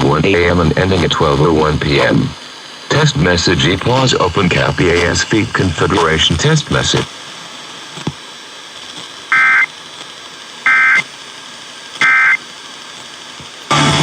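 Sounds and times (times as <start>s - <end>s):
faint steady hiss: 0.0s - 14.0s
warbling data tones: 9.3s - 9.7s, 10.6s - 11.1s, 12.0s - 12.4s.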